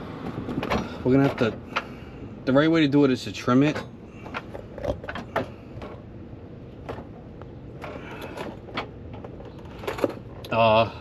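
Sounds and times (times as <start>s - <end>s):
low steady background noise: 0.0s - 11.0s
hand tools clicking and knocking: 0.2s - 1.9s.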